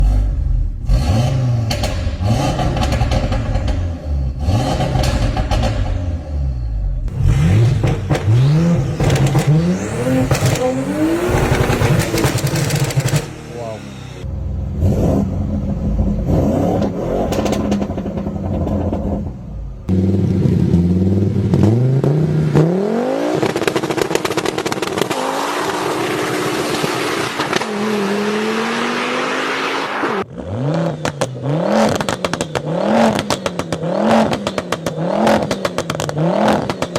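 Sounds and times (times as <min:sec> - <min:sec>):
car engine revving: 0:00.0 - 0:36.9
exhaust pops and crackles: 0:07.7 - 0:10.7, 0:11.4 - 0:13.3, 0:23.4 - 0:25.2, 0:30.9 - 0:36.9.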